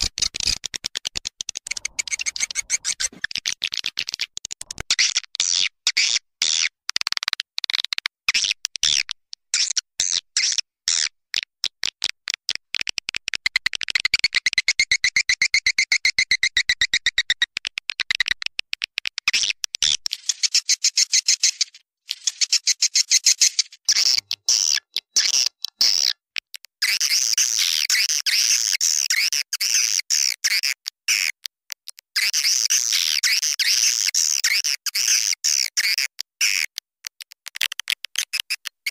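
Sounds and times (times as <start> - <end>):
sharp clicks: 0.0 - 4.9
high twittering bird chirps: 1.6 - 4.1.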